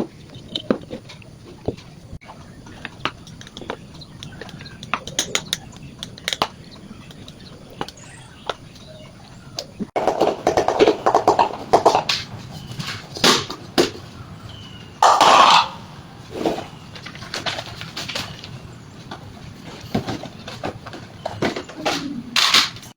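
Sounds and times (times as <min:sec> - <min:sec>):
clicks and knocks: 0:02.8 - 0:08.6.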